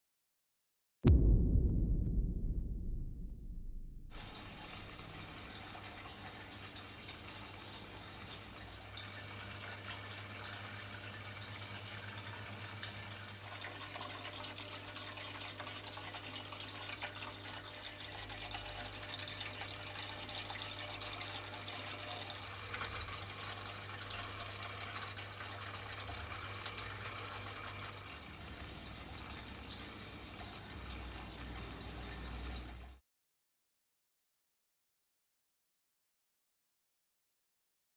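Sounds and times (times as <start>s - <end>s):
low steady hum: 1.1s - 4.9s
water trickling and splashing: 4.2s - 33.0s.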